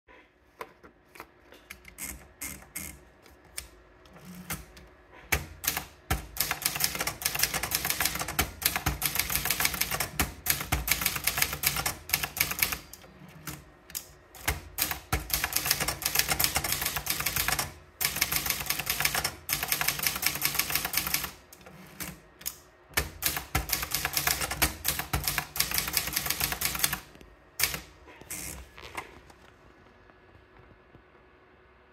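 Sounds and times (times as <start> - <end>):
manual typewriter typing: 5.3 - 28.6.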